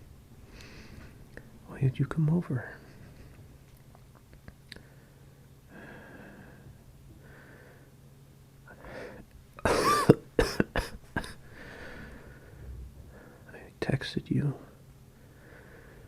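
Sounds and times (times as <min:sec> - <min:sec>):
man breathing softly: 0:00.4 - 0:01.5, 0:04.7 - 0:08.0, 0:08.7 - 0:09.3, 0:11.4 - 0:13.8, 0:15.1 - 0:16.0
man coughing: 0:09.6 - 0:11.4.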